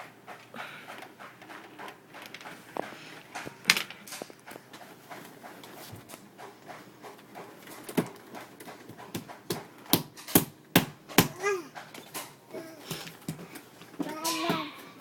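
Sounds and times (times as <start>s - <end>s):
hands banging on electric fan: 7.8s - 15.0s.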